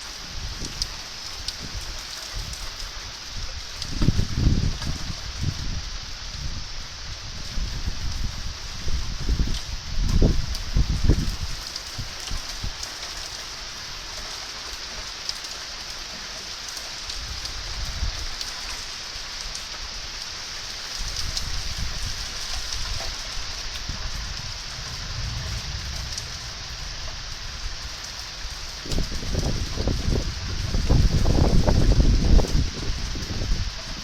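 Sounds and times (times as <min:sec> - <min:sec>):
steady rain falling: 0:00.0 - 0:34.0
low rumbles: 0:24.1 - 0:33.8.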